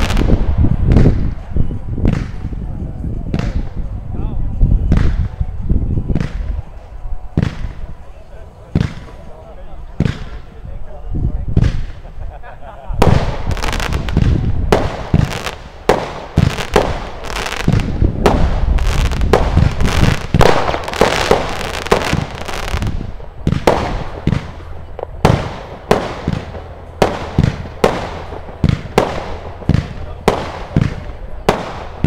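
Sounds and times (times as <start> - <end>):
firework crackling: 0.0 - 2.5, 13.0 - 32.0
firework bangs: 0.0 - 2.6, 4.8 - 5.4, 6.0 - 8.0, 8.7 - 9.2, 10.0 - 10.5, 11.5 - 12.2, 13.0 - 32.0.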